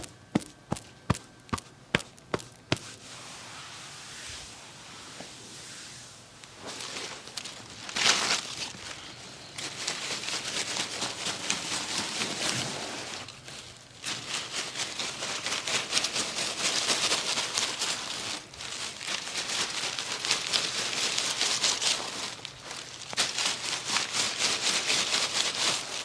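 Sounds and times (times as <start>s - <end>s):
crackly scratching and rubbing: 6.5s - 26.0s.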